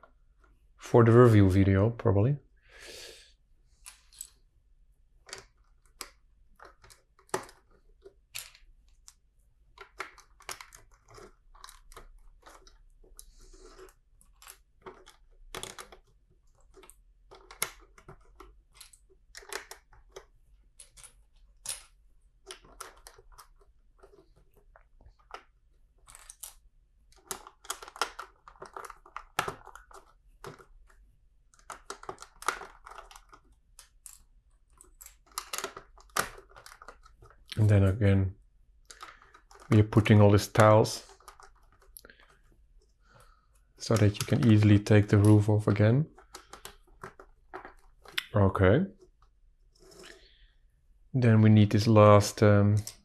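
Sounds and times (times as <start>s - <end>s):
plastic pieces clicking together: 5.2s - 37.6s, 38.8s - 40.0s, 40.6s - 42.4s, 46.1s - 48.3s
loose plastic pieces rattling: 9.8s - 37.6s, 38.8s - 42.4s, 46.1s - 48.2s.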